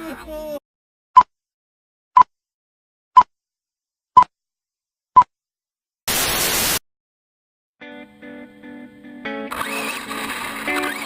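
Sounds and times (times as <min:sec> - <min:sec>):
static hiss burst: 0:06.1 - 0:06.8.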